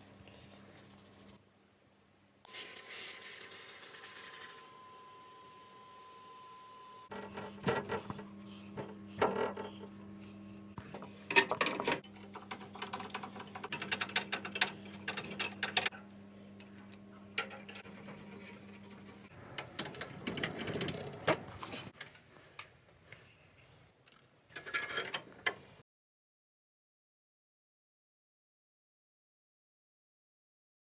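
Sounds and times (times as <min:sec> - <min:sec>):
steady machine hum: 0:03.8 - 0:19.6.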